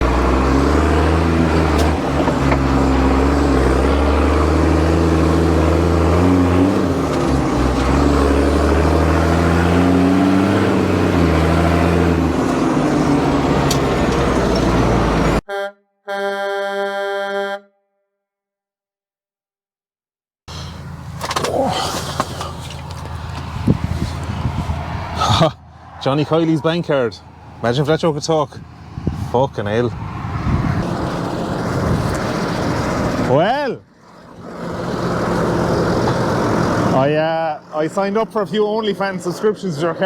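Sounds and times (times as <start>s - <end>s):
vehicle engine revving: 0.0s - 15.4s, 20.5s - 37.3s
pulsing horn blast: 15.3s - 18.1s
horn toot: 15.5s - 17.8s.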